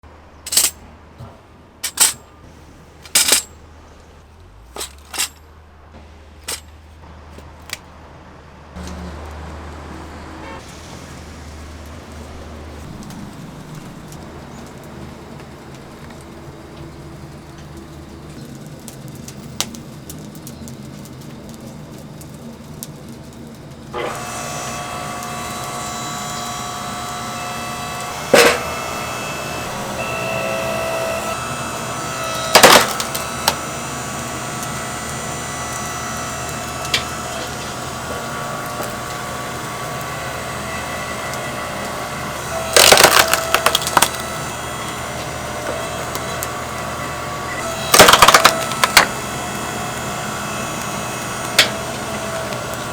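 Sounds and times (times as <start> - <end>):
machine hum: 8.7 - 52.9
wood knocking and cracking: 32.1 - 33.6, 42.7 - 44.4, 47.6 - 49.3.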